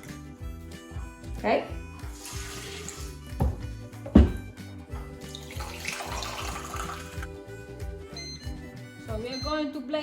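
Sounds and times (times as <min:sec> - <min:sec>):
water pouring into blender jar: 0:02.1 - 0:03.2, 0:05.2 - 0:07.4.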